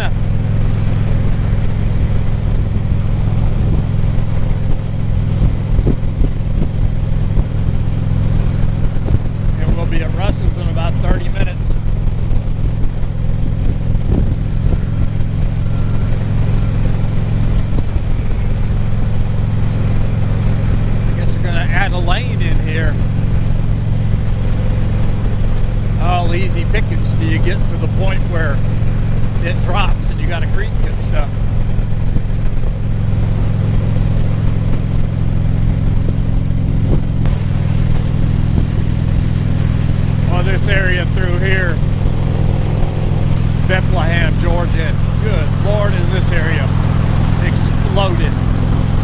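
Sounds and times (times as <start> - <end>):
motorcycle engine cruising: 0.0 - 49.0
wind and road noise: 0.0 - 49.0.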